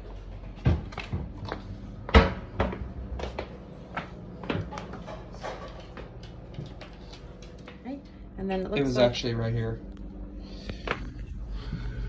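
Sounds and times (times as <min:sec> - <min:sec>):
things knocking and clattering: 0:04.4 - 0:07.0.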